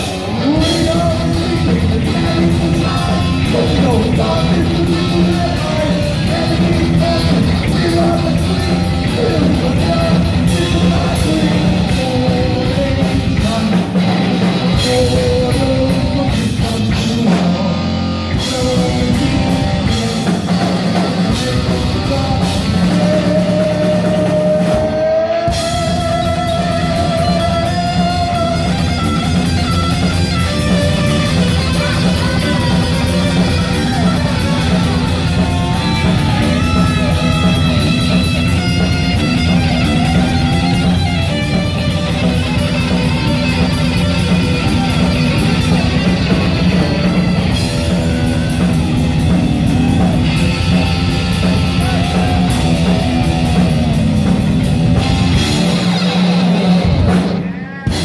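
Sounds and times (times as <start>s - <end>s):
drum kit: 0.0s - 58.0s
heavy metal band playing: 0.0s - 58.0s
lead guitar long note: 24.5s - 58.0s.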